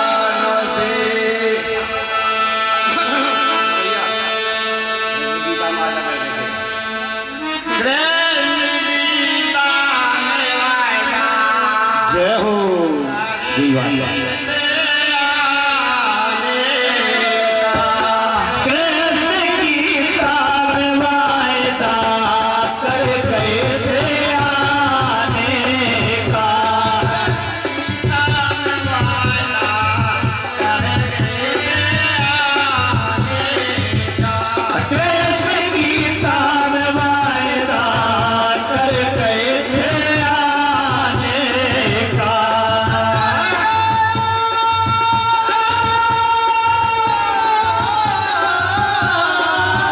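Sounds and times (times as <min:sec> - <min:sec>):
wavering devotional melody: 0:00.0 - 0:49.9
hand drum beat: 0:20.3 - 0:49.9.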